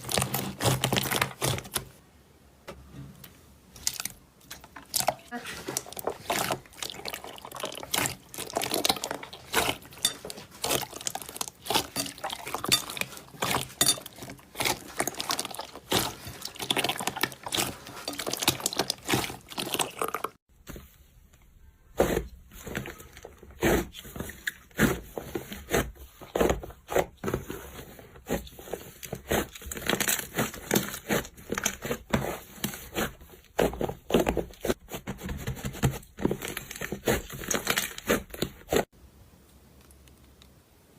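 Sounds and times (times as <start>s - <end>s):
slime squished by hand: 3.8s - 20.0s.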